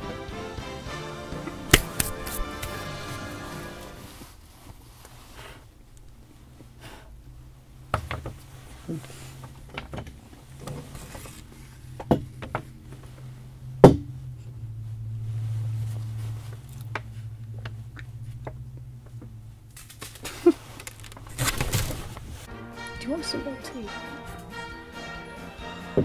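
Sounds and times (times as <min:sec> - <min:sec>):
low hum: 0:08.5 - 0:23.2
small objects clicking: 0:19.8 - 0:21.4.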